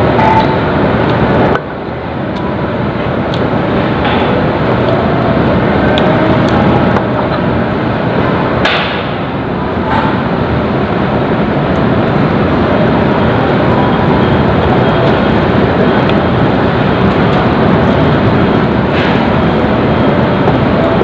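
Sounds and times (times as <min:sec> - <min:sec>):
loud rushing noise: 0:00.0 - 0:21.0
sharp knock: 0:08.6 - 0:09.2.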